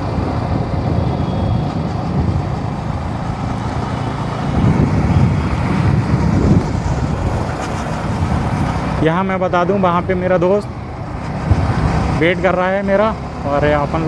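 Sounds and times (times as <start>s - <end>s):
wind noise on microphone: 0.0s - 9.0s, 11.1s - 12.2s.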